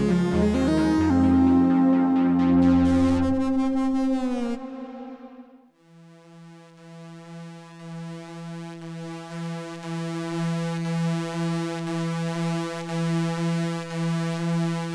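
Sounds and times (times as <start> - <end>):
synth bass: 0.0 - 5.6
synthesizer held notes: 0.0 - 5.7
throbbing synth note: 0.0 - 5.7.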